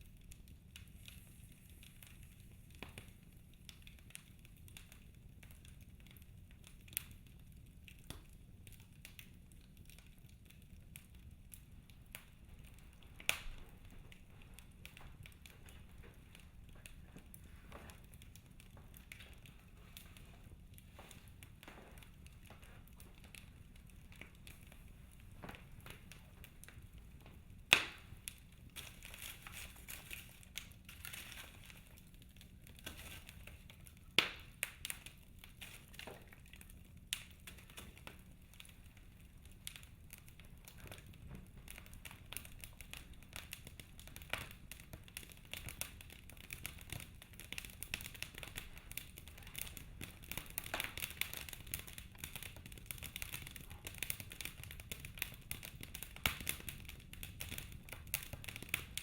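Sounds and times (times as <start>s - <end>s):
wood fire crackling: 0.0s - 59.0s
loud sharp pops of fire: 12.1s - 16.1s, 20.9s - 59.0s.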